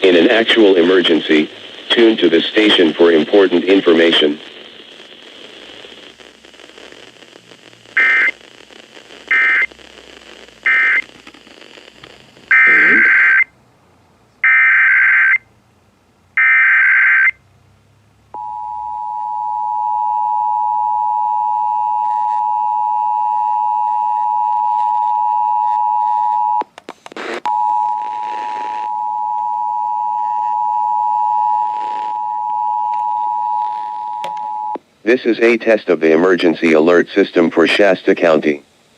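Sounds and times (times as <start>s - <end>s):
shrill data bursts: 0.0s - 13.5s, 27.1s - 35.8s
faint static: 0.0s - 38.9s.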